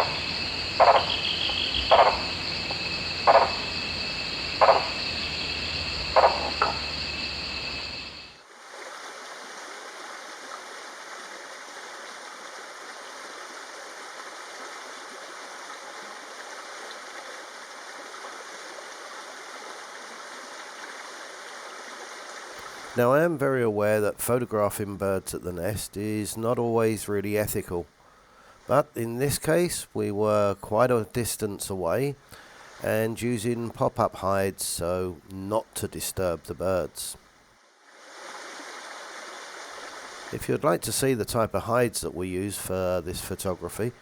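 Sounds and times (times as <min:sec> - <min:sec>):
bird croaking call: 0:00.0 - 0:08.4
high insect drone: 0:00.0 - 0:08.5
steady even hiss: 0:00.0 - 0:44.0.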